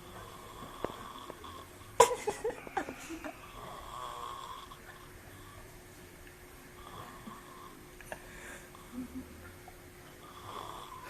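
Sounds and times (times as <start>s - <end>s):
person snoring: 2.6s - 4.8s, 10.2s - 11.0s.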